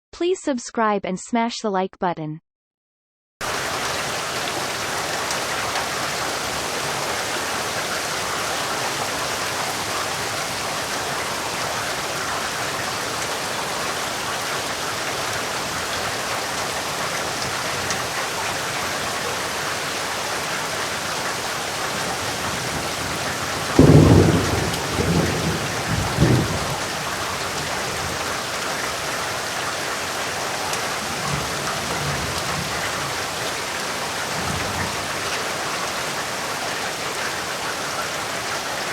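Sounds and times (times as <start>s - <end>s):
heavy rain falling: 3.4s - 38.9s
thunder clap and rumble: 21.9s - 28.5s, 31.0s - 33.2s.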